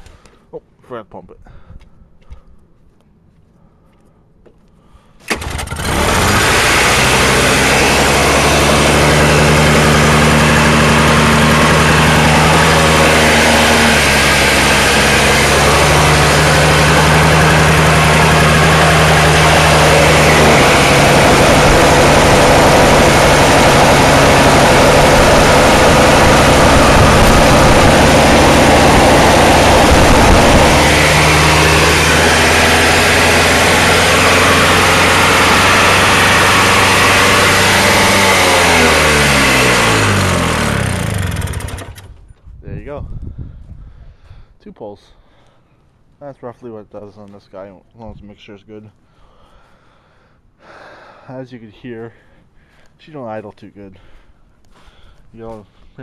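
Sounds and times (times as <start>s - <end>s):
snowblower engine pull-start: 5.2s - 42.3s
snowblower engine running loudly: 5.3s - 42.2s.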